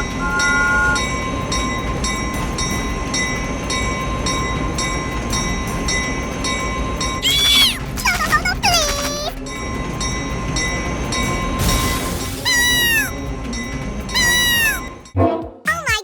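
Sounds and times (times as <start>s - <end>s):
bell ringing: 0.0s - 7.6s, 12.4s - 15.1s
train rumbling: 0.0s - 15.4s.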